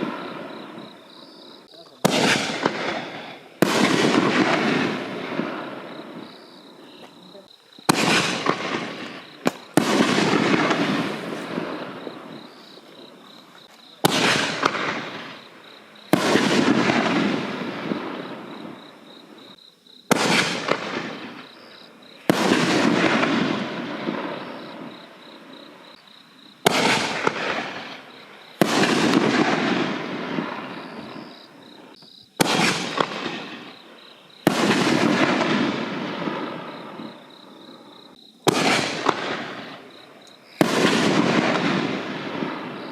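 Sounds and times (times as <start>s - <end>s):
mortar shell launch report: 0.0s - 42.9s
shell bursting bang: 2.0s - 6.2s, 32.4s - 33.6s.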